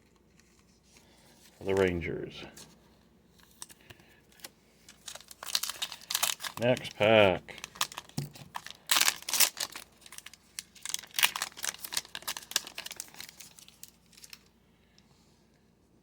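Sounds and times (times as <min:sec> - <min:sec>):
wrapper tearing and crinkling: 0:03.4 - 0:14.5.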